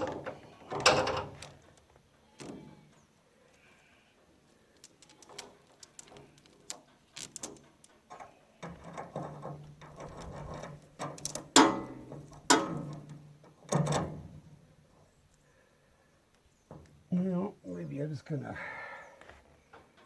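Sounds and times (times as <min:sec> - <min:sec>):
loud metal clanks: 0:11.5 - 0:12.9.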